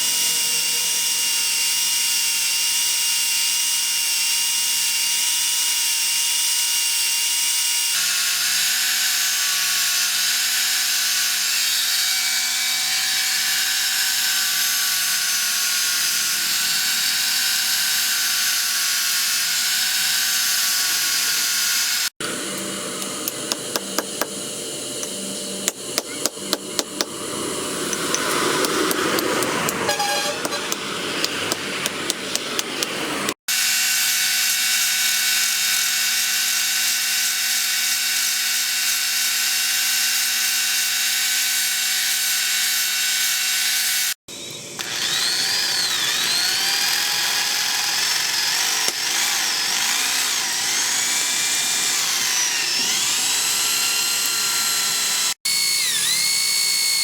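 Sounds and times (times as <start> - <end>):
power tool motor running: 0.0 - 57.0
tool whine: 0.0 - 57.0
sharp metal strikes: 28.2 - 32.9.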